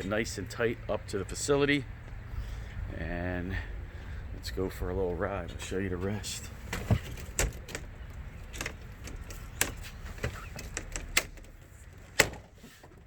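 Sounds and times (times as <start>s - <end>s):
sharp clicks and knocks: 6.7s - 13.0s.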